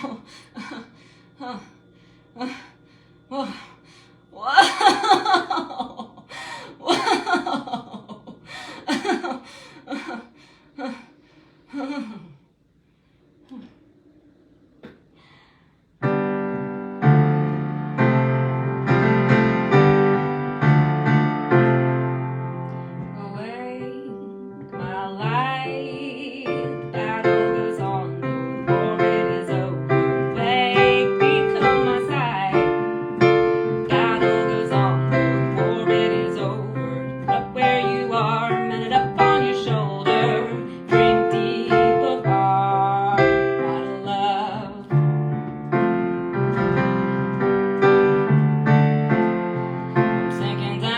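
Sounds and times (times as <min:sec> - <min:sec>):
electric keyboard chords: 0:16.0 - 0:50.9.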